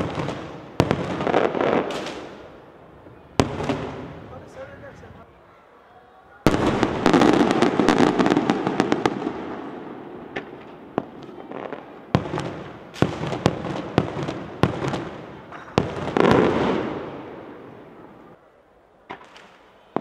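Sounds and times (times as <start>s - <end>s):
fireworks crackling and bangs: 0.0s - 5.2s, 6.4s - 18.4s, 19.0s - 20.0s.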